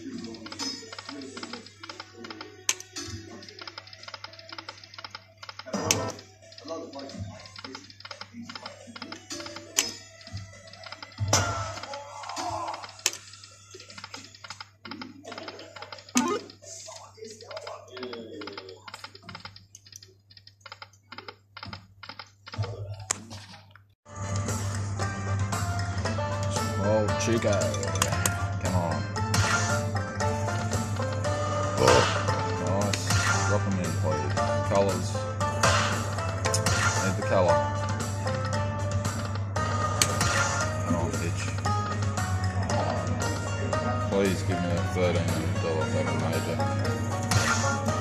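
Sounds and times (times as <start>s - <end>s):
electronic ticks of poker machine: 0.0s - 11.8s, 12.8s - 22.7s
fast ticking of spinning reels: 3.2s - 11.2s
jingly electronic tune: 15.4s - 16.6s.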